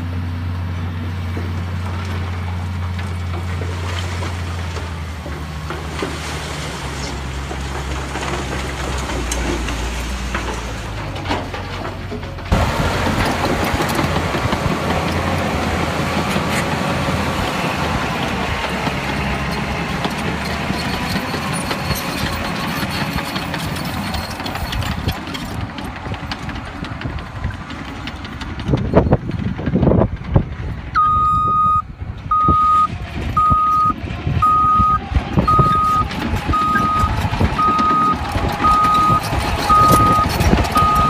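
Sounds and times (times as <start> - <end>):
heavy machine engine running: 0.0 - 41.0
reversing alarm beeping: 31.0 - 41.0.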